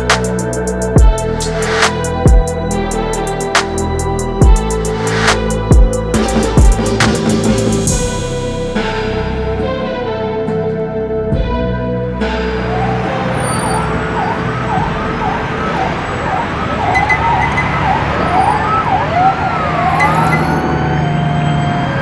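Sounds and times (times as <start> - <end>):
emergency siren yelping: 12.5 - 22.0.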